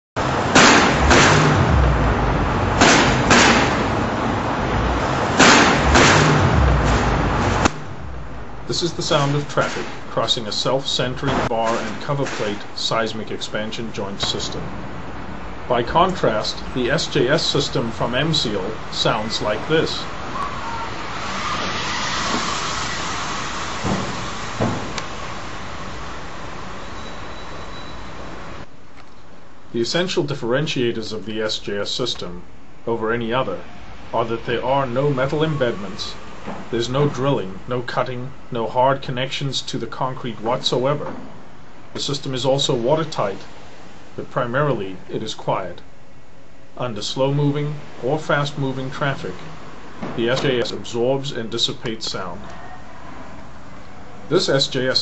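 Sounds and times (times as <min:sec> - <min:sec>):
traffic rumble: 0:00.0 - 0:55.0
car tyre and engine noise: 0:00.2 - 0:29.6, 0:32.7 - 0:55.0
wheels banging on metal plates: 0:09.0 - 0:10.2, 0:11.2 - 0:12.9.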